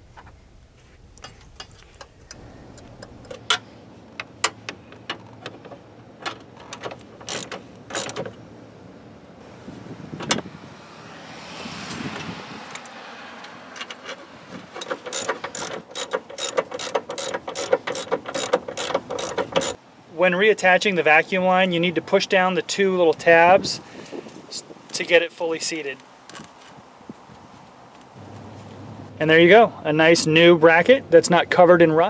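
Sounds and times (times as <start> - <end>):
metal parts clinking: 1.2 - 8.4, 13.8 - 19.8
socket ratchet clicking: 4.2 - 8.4, 14.8 - 19.8.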